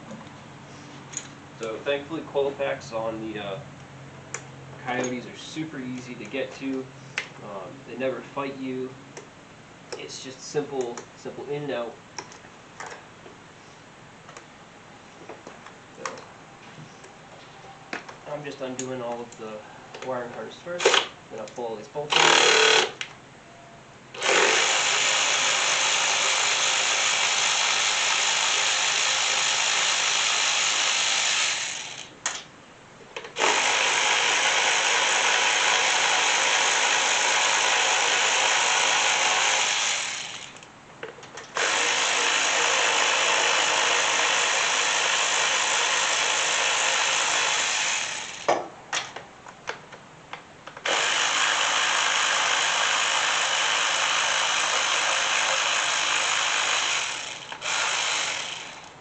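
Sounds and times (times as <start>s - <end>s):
handheld power tool running: 22.1s - 23.0s, 24.2s - 32.1s, 33.4s - 40.6s, 41.6s - 48.5s, 50.8s - 59.0s.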